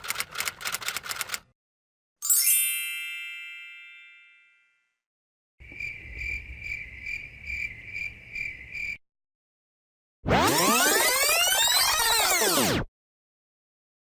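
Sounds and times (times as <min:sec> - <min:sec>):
bell-like ding: 0:02.2 - 0:04.9
cricket chirping trill: 0:05.6 - 0:09.0.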